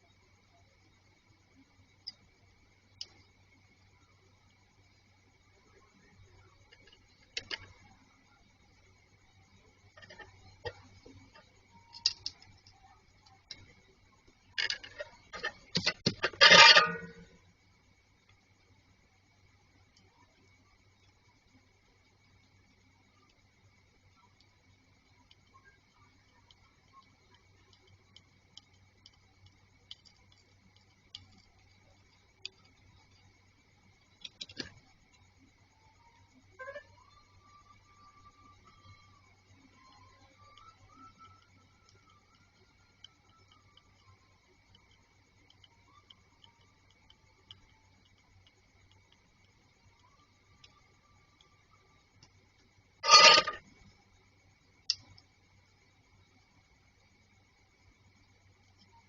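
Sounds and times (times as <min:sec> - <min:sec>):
faint electrical hum: 0:00.0 - 0:59.0
small clicks and ticks: 0:00.0 - 0:59.0
small hard objects clicking: 0:09.9 - 0:13.8, 0:26.2 - 0:33.4, 0:34.0 - 0:35.2
objects clattering: 0:14.6 - 0:17.2, 0:53.0 - 0:53.6.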